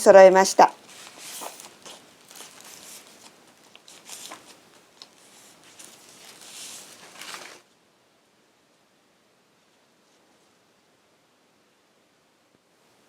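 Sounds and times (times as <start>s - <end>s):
paper rustling: 0.6s - 7.7s.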